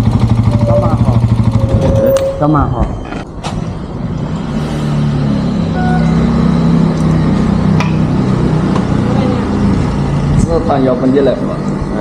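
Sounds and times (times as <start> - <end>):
motorcycle engine running: 0.0 - 2.5
wind and road noise: 0.0 - 12.0.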